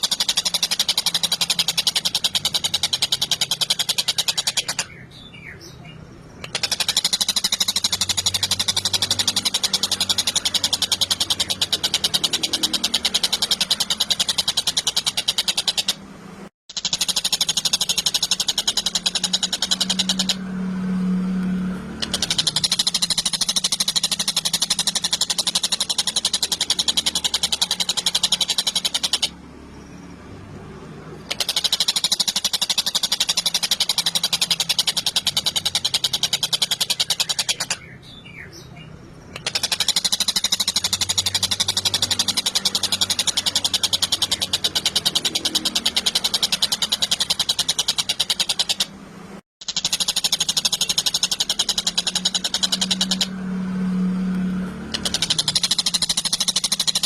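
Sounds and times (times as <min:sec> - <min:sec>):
kingfisher rattling chatter: 0:00.0 - 0:05.0, 0:06.4 - 0:16.0, 0:31.2 - 0:37.8, 0:39.3 - 0:48.9, 0:49.8 - 0:53.4.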